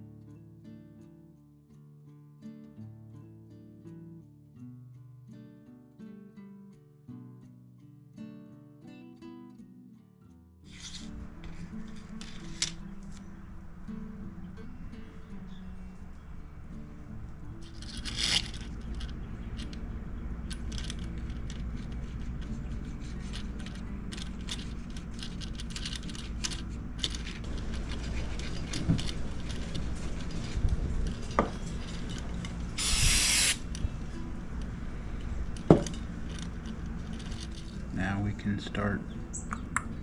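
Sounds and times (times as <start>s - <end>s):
low steady hum: 10.7s - 40.0s
brief hiss: 32.8s - 33.8s.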